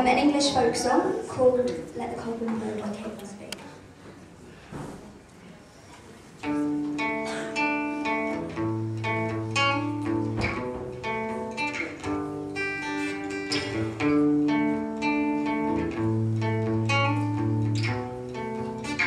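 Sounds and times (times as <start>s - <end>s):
acoustic guitar folk music: 6.2s - 19.0s.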